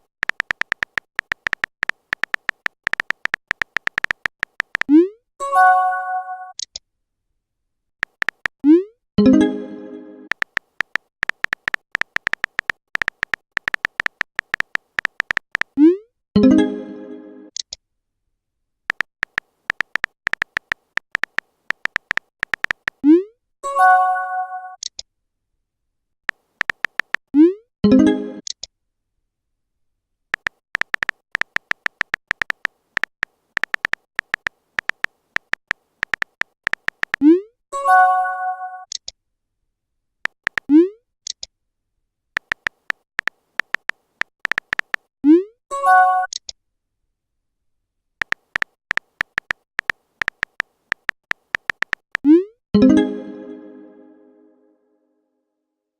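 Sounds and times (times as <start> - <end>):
keyboard tap clicks: 0.0 - 4.9, 8.0 - 8.6, 10.3 - 15.7, 18.9 - 23.0, 26.6 - 27.2, 30.4 - 37.2, 40.4 - 40.7, 42.4 - 45.1, 48.2 - 52.3
message alert chime: 52.8 - 54.6.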